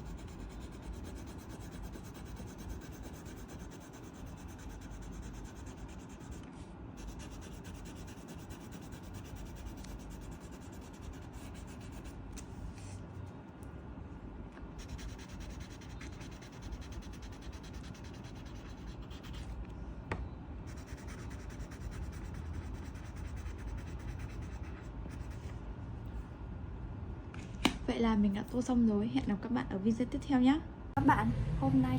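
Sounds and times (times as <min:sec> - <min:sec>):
drawing tool scratching paper: 0:00.0 - 0:12.2, 0:14.8 - 0:19.6, 0:20.7 - 0:25.5.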